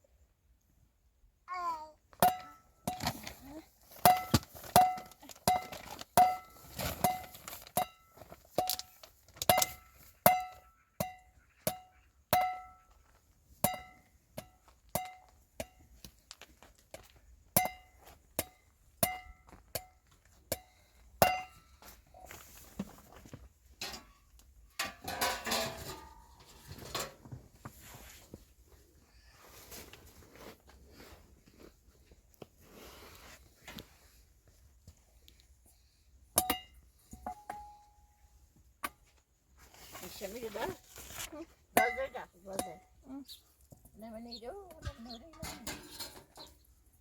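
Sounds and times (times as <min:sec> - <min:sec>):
rustling clatter: 0:02.9 - 0:10.2, 0:21.9 - 0:28.8, 0:39.6 - 0:41.5.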